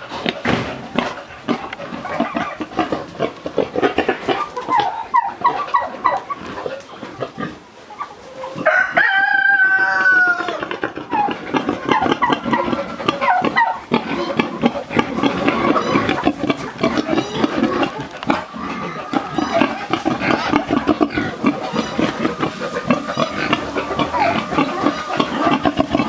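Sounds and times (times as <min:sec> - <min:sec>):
chickens clucking: 0:00.0 - 0:26.0
rooster crowing: 0:08.6 - 0:10.6, 0:17.2 - 0:26.0.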